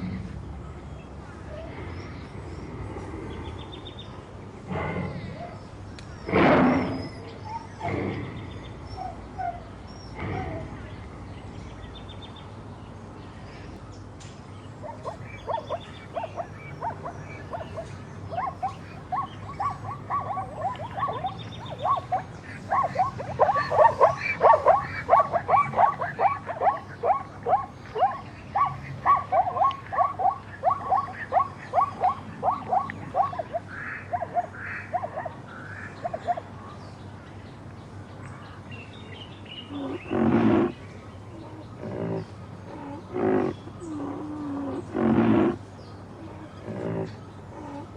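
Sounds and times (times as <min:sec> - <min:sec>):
low frog call: 0:14.8 - 0:36.5, 0:39.7 - 0:47.9
frogs croaking: 0:14.8 - 0:36.7.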